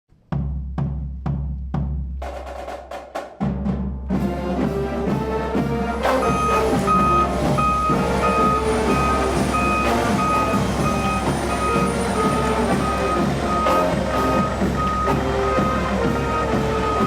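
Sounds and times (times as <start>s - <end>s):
drum-heavy music: 0.2s - 17.0s
reversing alarm beeping: 6.1s - 17.0s.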